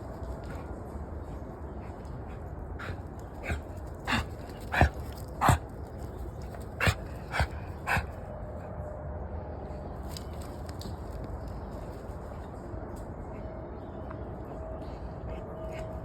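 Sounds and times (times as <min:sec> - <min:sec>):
dog coughing: 0:02.8 - 0:05.6.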